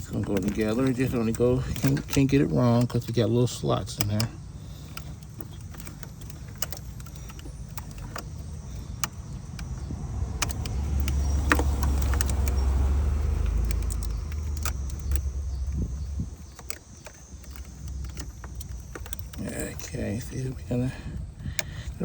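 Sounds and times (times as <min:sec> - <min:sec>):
plastic connector clicks and rattles: 0:00.0 - 0:22.0
low rumble: 0:09.6 - 0:16.7.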